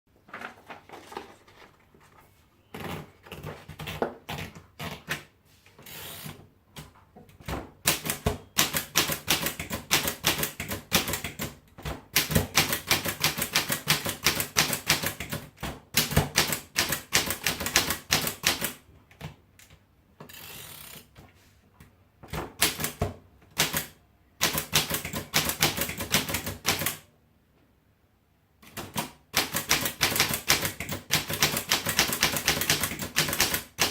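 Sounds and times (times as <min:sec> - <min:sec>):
typewriter keystrokes clacking: 0:07.8 - 0:18.8, 0:22.4 - 0:27.0, 0:28.6 - 0:33.9.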